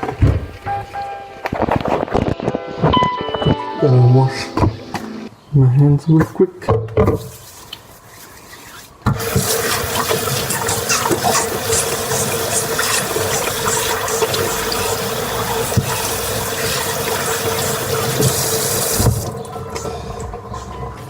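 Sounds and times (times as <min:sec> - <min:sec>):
hands washing: 0:09.1 - 0:19.5
tap water running into sink: 0:09.1 - 0:19.5.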